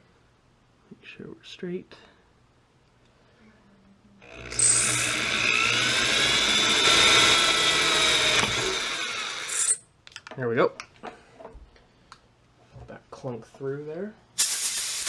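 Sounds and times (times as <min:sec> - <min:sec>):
electric drill whining into steel: 0:04.2 - 0:09.8.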